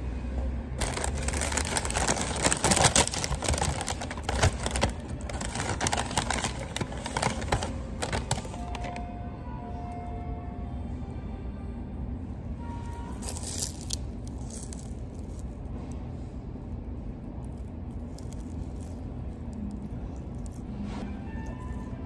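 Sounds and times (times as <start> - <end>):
paper packaging crinkling: 0.8 - 9.0, 13.2 - 15.5.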